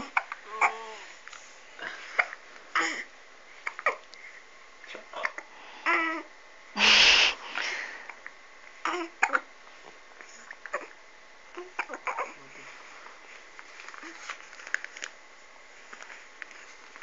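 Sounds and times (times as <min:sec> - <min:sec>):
loud breathy burst: 0:06.8 - 0:08.1.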